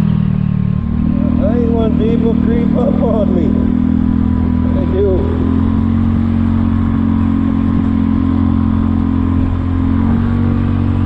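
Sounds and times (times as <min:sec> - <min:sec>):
scooter engine running: 0:00.0 - 0:11.0.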